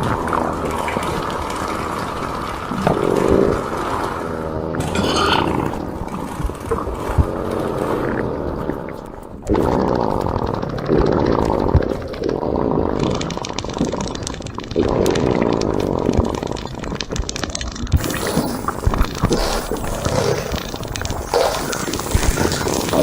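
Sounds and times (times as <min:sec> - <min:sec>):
person farting: 0:18.0 - 0:23.0.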